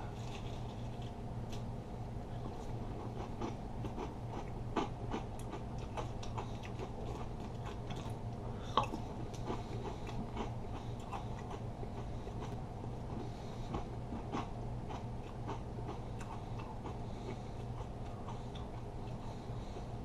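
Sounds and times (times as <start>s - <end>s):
steady low hum: 0.0s - 20.0s
cereal crunching while chewed: 2.6s - 19.2s.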